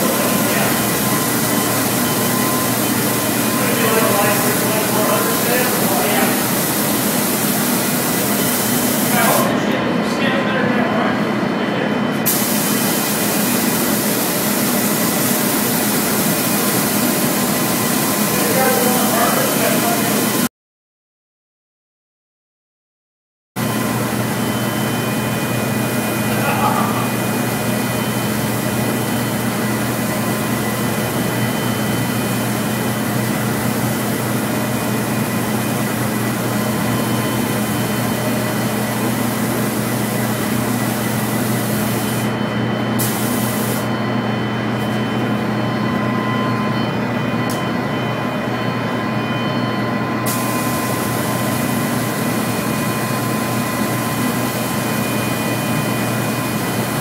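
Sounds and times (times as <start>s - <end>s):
loud steady hiss: 0.0s - 9.5s
low machine hum: 0.0s - 20.4s, 23.6s - 57.0s.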